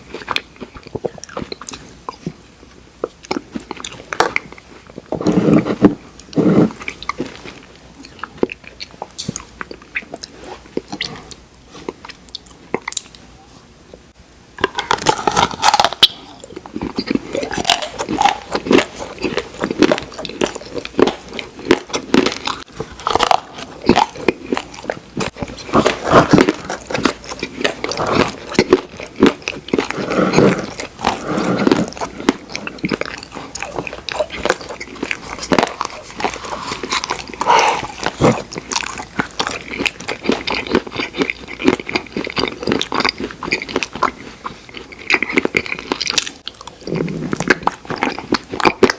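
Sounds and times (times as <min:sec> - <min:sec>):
wet chewing and smacking: 0:00.0 - 0:02.4, 0:03.0 - 0:13.2, 0:14.6 - 0:48.9
cookie pieces crunching: 0:14.6 - 0:48.9.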